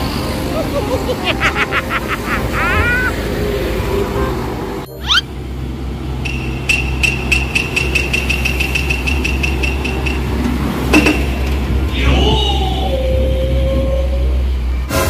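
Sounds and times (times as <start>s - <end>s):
rising tone: 0.0s - 14.9s
heavy vehicle engine idling: 3.1s - 11.9s
rapid high-pitched beeping: 6.3s - 10.4s.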